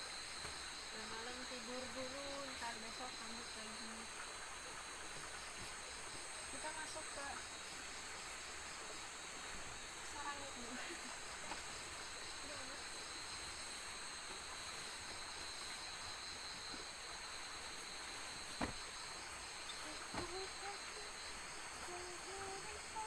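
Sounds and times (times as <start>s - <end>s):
night insects chirring: 0.0s - 23.0s.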